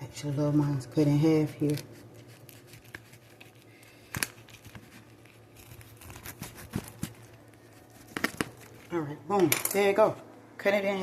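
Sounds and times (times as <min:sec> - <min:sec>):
knife cutting toasted bread: 0:01.6 - 0:08.8.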